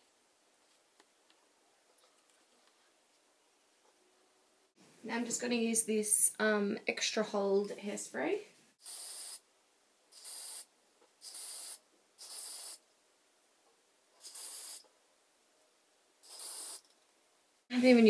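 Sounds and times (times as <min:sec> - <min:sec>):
aerosol hairspray hissing bursts: 0:08.8 - 0:09.4, 0:10.1 - 0:12.8, 0:14.2 - 0:14.9, 0:16.2 - 0:16.8.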